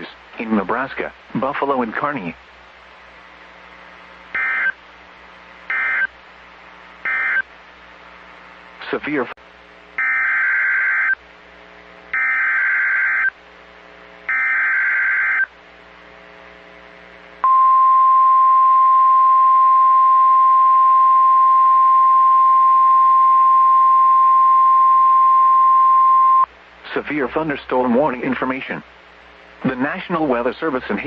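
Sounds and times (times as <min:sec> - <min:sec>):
harsh buzzy data bursts: 0:04.3 - 0:04.8, 0:05.7 - 0:06.2, 0:07.0 - 0:07.5
steady warning alarm tone: 0:04.4 - 0:04.8, 0:05.7 - 0:06.1, 0:07.0 - 0:07.4, 0:10.0 - 0:11.2, 0:12.1 - 0:13.4, 0:14.3 - 0:15.5.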